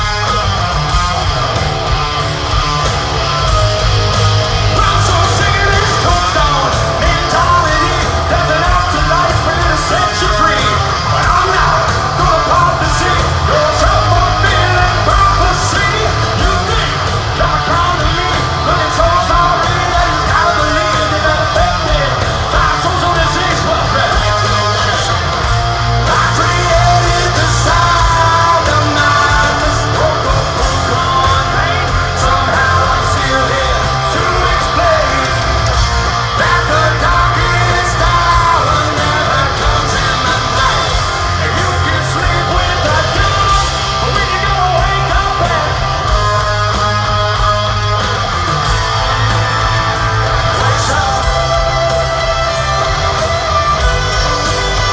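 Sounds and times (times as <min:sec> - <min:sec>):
hard rock band playing: 0:00.0 - 0:54.9
lead singer vocals: 0:00.0 - 0:54.9.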